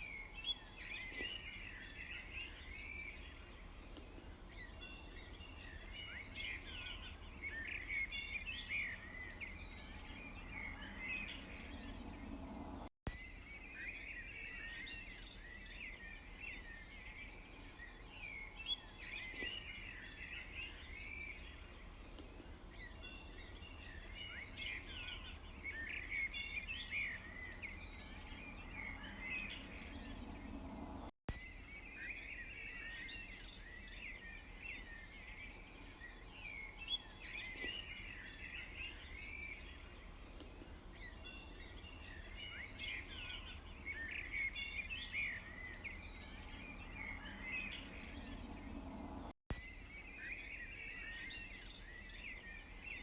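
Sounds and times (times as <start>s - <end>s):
small birds chirping and twittering: 0.0s - 53.0s.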